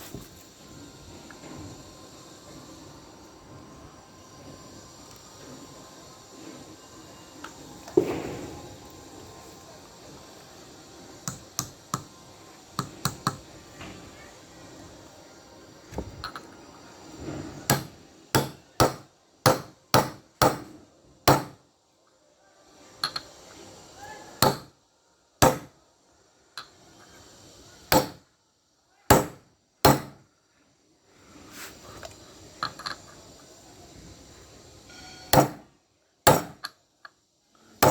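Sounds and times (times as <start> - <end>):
hammer striking metal: 17.7 - 20.7, 21.3 - 21.6, 24.4 - 24.7, 25.4 - 25.7, 27.9 - 28.2, 29.1 - 30.2, 34.9 - 35.7, 36.3 - 36.6.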